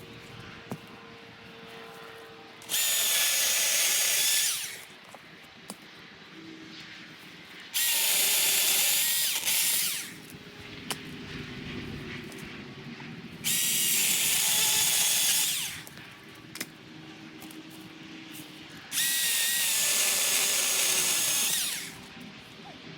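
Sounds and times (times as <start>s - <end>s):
chainsaw motor whining: 2.6s - 4.9s, 7.8s - 10.3s, 13.4s - 16.0s, 18.9s - 22.1s.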